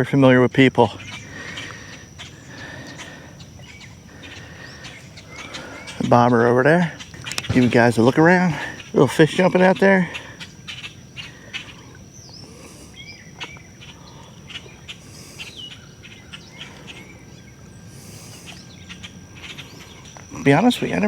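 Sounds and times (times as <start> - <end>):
birds chirping: 0.0 - 21.0
high insect drone: 0.0 - 21.0.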